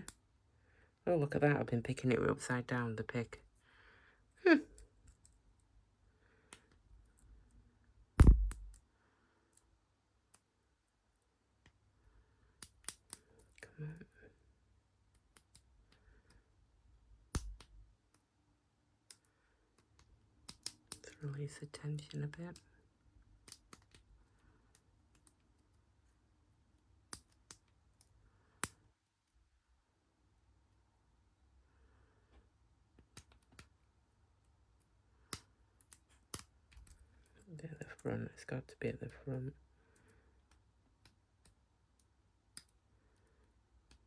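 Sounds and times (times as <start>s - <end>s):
loud knock: 8.2s - 8.7s
lock pick metal clicks: 17.3s - 17.7s, 20.4s - 21.1s, 23.4s - 24.0s.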